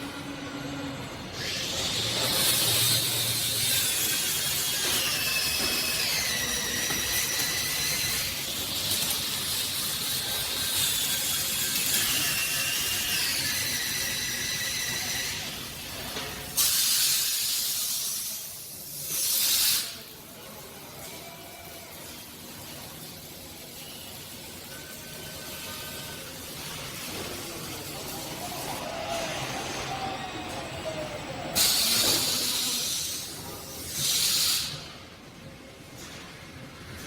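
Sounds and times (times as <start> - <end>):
welding machine hiss: 1.4 - 20.5, 25.2 - 35.1
short bursts of hiss: 16.6 - 20.1, 31.6 - 35.0.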